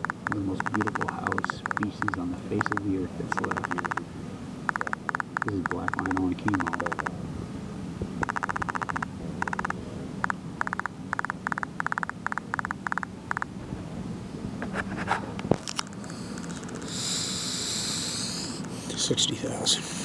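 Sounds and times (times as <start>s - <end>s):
mouse scroll wheel clicking: 0.0s - 2.8s, 3.4s - 4.0s, 4.7s - 7.1s, 8.2s - 13.5s
separate clicks: 0.0s - 2.8s, 3.4s - 4.0s, 4.7s - 7.1s, 8.2s - 13.5s
faint steady hum: 0.0s - 20.0s.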